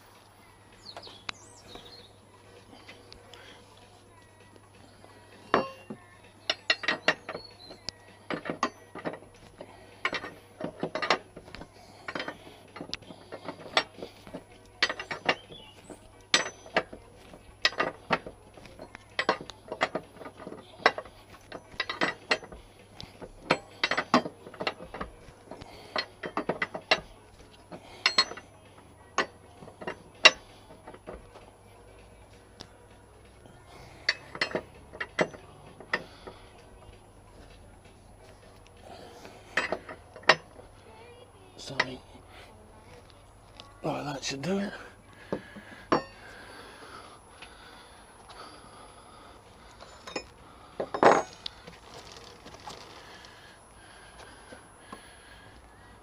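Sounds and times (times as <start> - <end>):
hand tools clicking on metal: 5.4 - 32.7, 33.3 - 37.7, 38.5 - 40.7, 45.3 - 46.3, 49.7 - 53.4.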